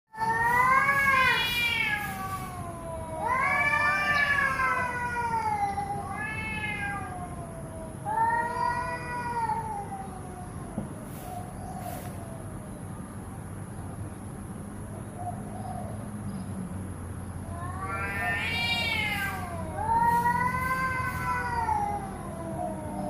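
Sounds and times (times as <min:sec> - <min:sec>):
cat meowing: 0:00.2 - 0:10.5, 0:17.4 - 0:23.0.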